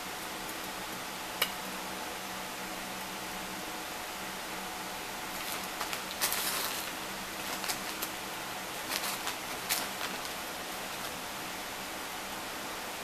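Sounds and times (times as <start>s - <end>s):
steady hiss: 0.0s - 13.0s
sugar sprinkling rustles: 5.2s - 11.3s.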